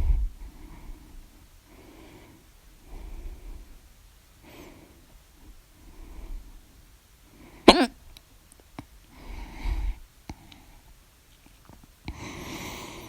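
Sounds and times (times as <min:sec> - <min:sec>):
woman hiccuping: 0:07.7 - 0:07.9
breathing in and out: 0:09.1 - 0:10.8, 0:12.1 - 0:13.0.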